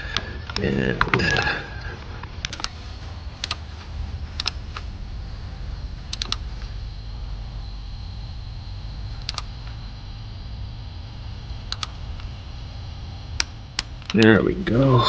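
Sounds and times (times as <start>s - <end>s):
steady low hum: 0.0s - 15.0s
torque wrench clicking: 2.4s - 2.8s, 3.4s - 3.6s, 6.1s - 6.4s, 9.2s - 9.5s.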